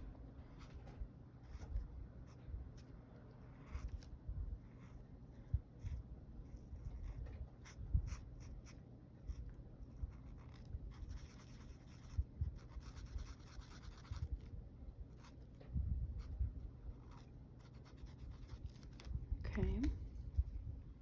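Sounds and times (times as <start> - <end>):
pen scratching on paper: 0.4 - 14.5, 16.9 - 19.1.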